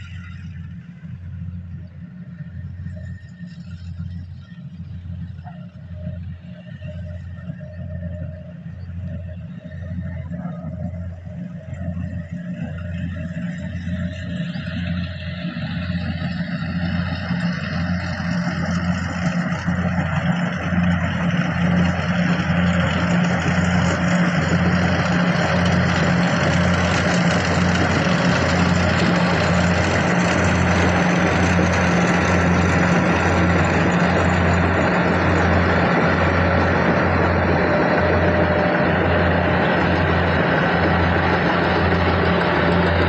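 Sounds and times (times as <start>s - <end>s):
combine harvester engine humming: 0.0s - 43.0s.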